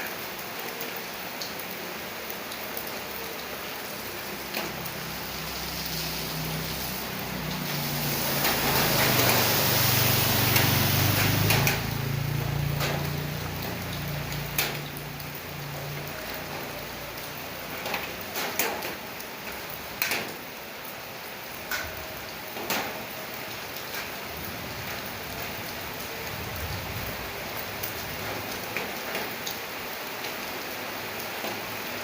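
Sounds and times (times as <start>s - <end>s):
steady rain falling: 0.0s - 32.0s
large raindrops landing sharply: 4.0s - 20.6s, 21.6s - 30.4s.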